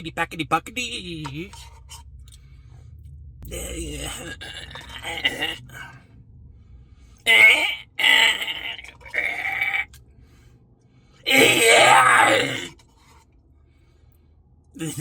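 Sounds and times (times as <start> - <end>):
man grunting and groaning: 3.5 - 6.0, 7.3 - 9.9, 11.3 - 12.8.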